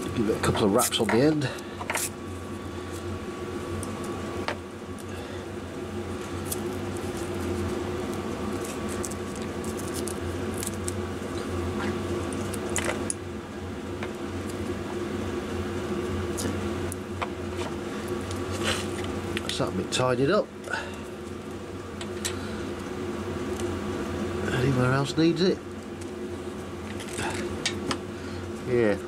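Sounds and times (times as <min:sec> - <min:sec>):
steady low hum: 0:00.0 - 0:29.0
tape rustling: 0:06.1 - 0:13.2.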